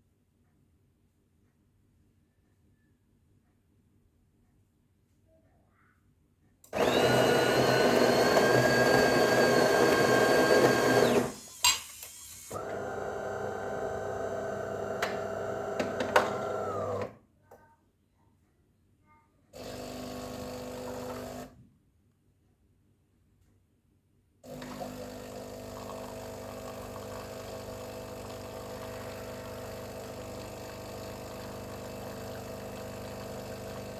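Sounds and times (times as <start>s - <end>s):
coffee machine motor whining: 6.7s - 17.1s, 19.6s - 21.5s, 24.5s - 33.9s
quieter motor running: 6.8s - 11.5s, 12.4s - 17.1s, 24.5s - 33.9s.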